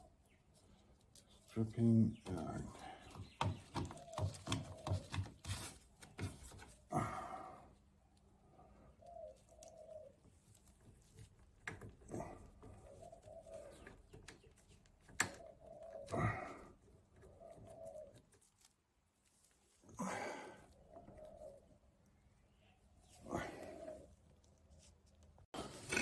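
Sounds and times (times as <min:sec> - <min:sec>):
dove cooing: 0:03.8 - 0:05.3, 0:08.8 - 0:10.3, 0:11.8 - 0:14.4, 0:15.2 - 0:18.4, 0:20.1 - 0:21.7, 0:23.0 - 0:24.2.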